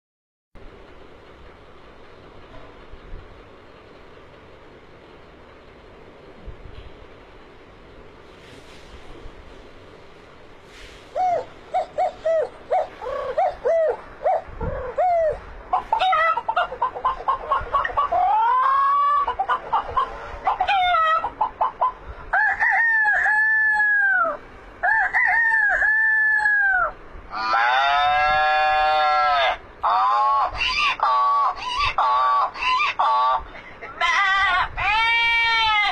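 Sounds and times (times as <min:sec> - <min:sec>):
chicken clucking: 0:11.1 - 0:23.4
rooster crowing: 0:22.3 - 0:31.1.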